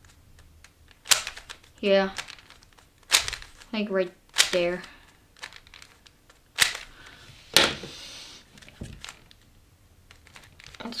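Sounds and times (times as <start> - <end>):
puzzle cube clacking and turning: 0.0 - 7.2, 8.4 - 11.0.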